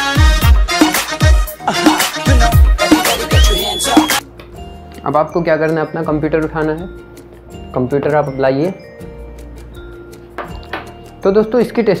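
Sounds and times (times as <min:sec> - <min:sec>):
afrobeat music with heavy bass: 0:00.0 - 0:04.2.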